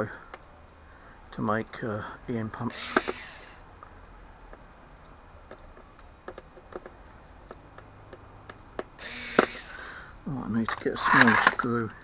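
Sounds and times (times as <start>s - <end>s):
small clicks and light knocks: 3.8s - 9.7s, 10.6s - 12.0s.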